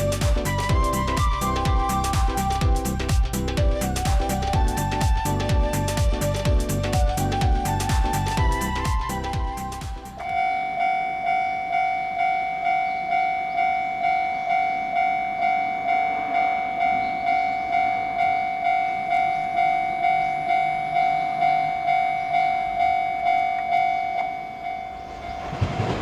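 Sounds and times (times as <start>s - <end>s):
level crossing bell ringing: 10.2s - 25.0s.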